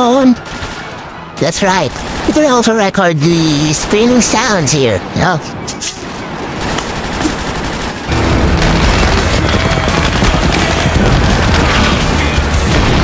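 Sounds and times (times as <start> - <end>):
rapid gunfire: 0.4 - 4.8, 6.0 - 13.0.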